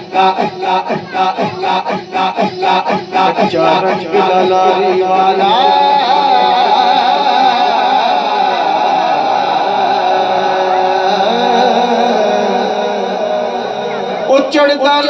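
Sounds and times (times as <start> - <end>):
wavering instrumental melody: 0.0 - 5.5.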